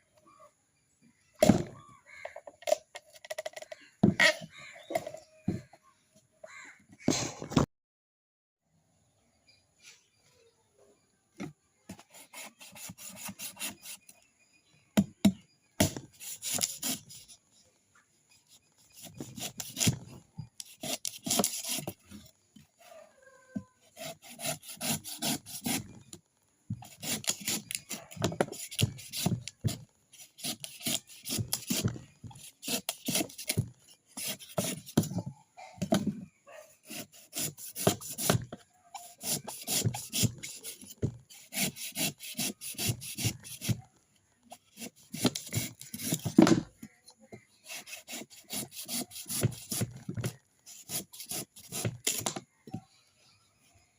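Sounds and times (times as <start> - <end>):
coconut being scraped: 11.9 - 14.1, 15.8 - 17.4, 18.4 - 23.0, 23.8 - 26.1, 26.8 - 35.2, 36.8 - 43.8, 44.5 - 46.4, 47.4 - 52.4.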